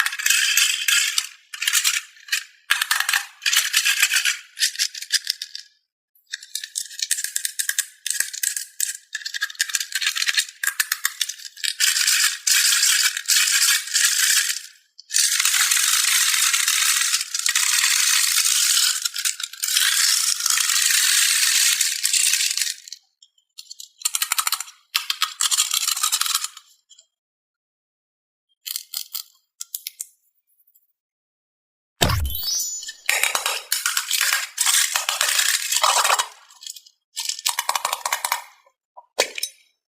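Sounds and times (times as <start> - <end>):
plastic balls clattering: 33.1 - 38.6.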